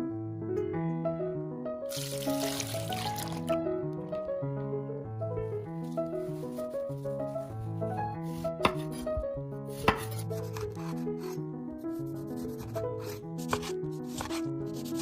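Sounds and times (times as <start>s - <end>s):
background music melody: 0.0s - 15.0s
scraping strokes: 5.9s - 11.4s
knife knocks on a board: 8.6s - 9.2s, 9.9s - 10.2s.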